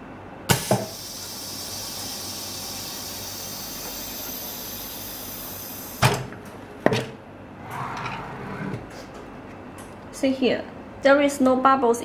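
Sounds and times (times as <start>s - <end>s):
laminator machine hissing: 0.5s - 6.2s.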